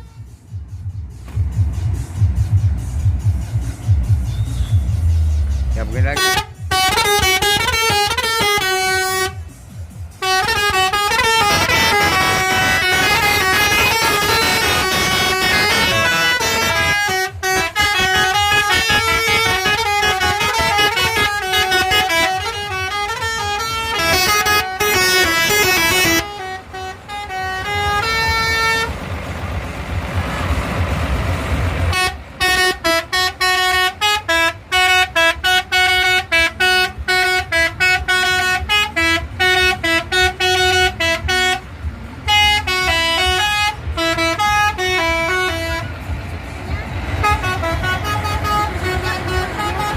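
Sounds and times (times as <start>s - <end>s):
musical air horn tune: 0.0s - 0.5s, 6.0s - 9.6s, 10.2s - 29.0s, 31.9s - 46.0s, 47.1s - 49.9s
noisy rumble: 0.0s - 49.9s.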